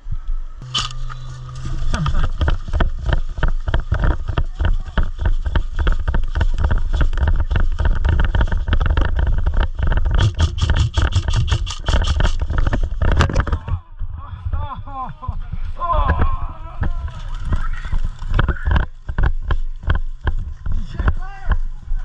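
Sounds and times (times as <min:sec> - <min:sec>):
camera rumble and knocking: 0:00.6 - 0:22.0
rapid sharp clicks: 0:01.9 - 0:13.2.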